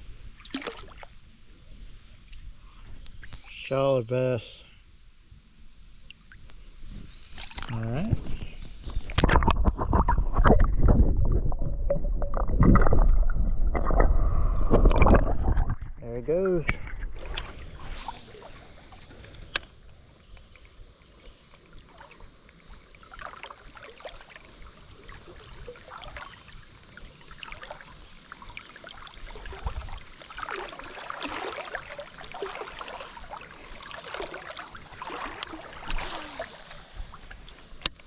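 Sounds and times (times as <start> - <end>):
water gurgling and sloshing: 0.0 - 3.7, 5.8 - 38.0.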